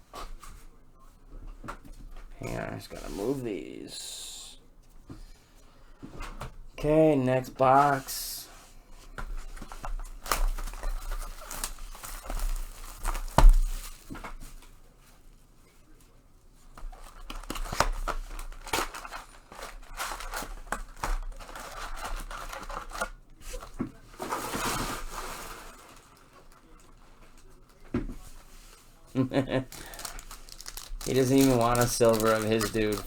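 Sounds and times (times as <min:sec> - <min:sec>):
cardboard and plastic tearing: 0:09.4 - 0:14.6, 0:16.7 - 0:27.4, 0:29.3 - 0:33.0.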